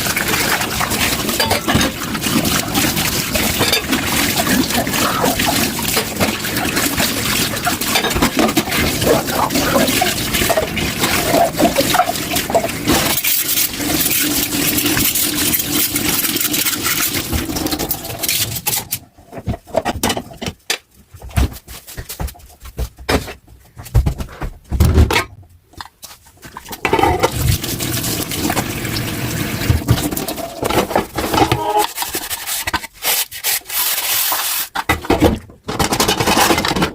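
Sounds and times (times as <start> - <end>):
tap water running into sink: 0.0 - 18.2, 27.2 - 30.8.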